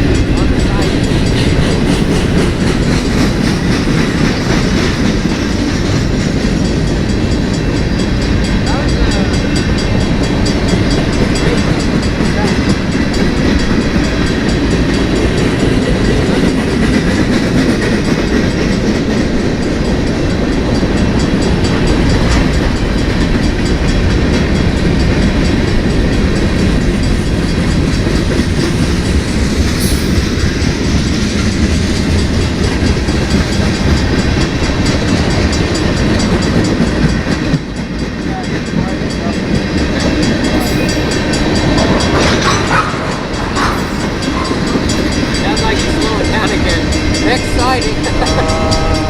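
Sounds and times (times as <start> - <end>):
freight train rumbling past: 0.0 - 49.0.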